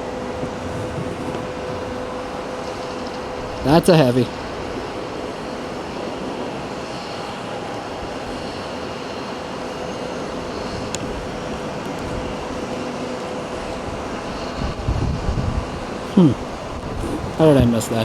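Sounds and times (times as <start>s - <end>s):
jet engines running: 0.0s - 18.0s.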